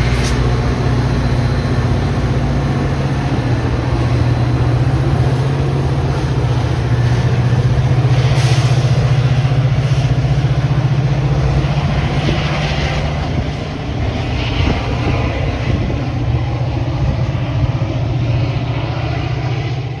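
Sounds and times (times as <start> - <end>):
brief hissing: 0.0 - 0.6, 8.3 - 9.1
rumbling noise: 0.0 - 19.7
diesel locomotive droning: 0.0 - 20.0.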